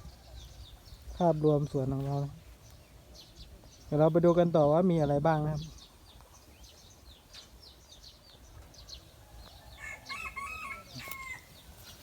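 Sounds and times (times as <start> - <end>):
small birds chirping: 0.0 - 12.0
rooster crowing faintly: 9.2 - 12.0.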